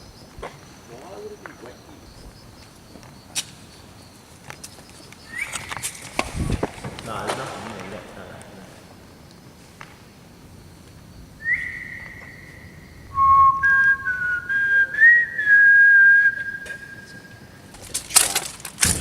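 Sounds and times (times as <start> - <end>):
person whistling: 5.3 - 5.8, 11.4 - 17.5.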